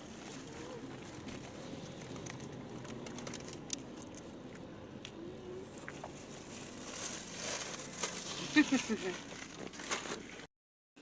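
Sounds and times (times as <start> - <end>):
small clicks and rustles: 0.0 - 5.2
car cabin hum: 0.0 - 10.4.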